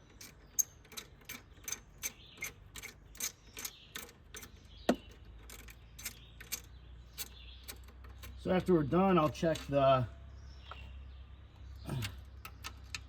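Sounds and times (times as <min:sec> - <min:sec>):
hand ratchet clicking: 0:00.0 - 0:04.6.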